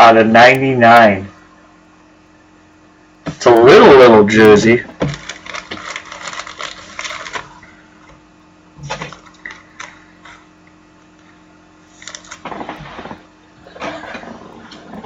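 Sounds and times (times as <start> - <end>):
cards and packaging rustling: 5.0 - 8.2, 11.9 - 13.1.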